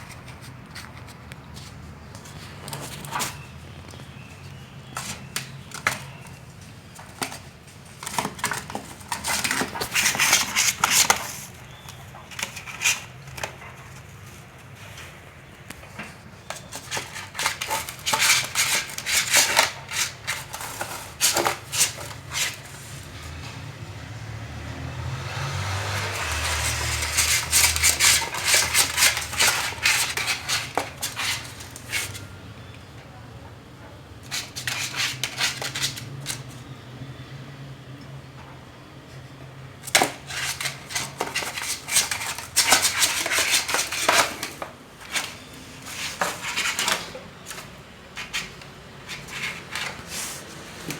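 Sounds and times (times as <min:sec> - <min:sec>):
kitten claws scratching: 0:00.0 - 0:23.3, 0:25.6 - 0:32.4, 0:34.2 - 0:36.6, 0:39.8 - 0:50.9.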